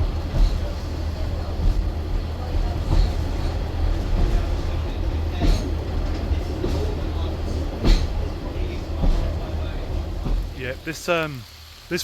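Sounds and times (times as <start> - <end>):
train rumble: 0.0 - 12.0.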